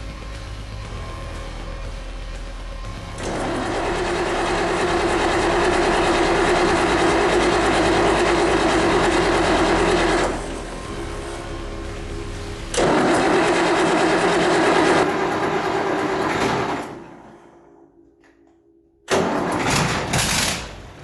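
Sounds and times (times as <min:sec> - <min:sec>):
starter motor cranking: 0:03.2 - 0:10.5, 0:12.7 - 0:16.9.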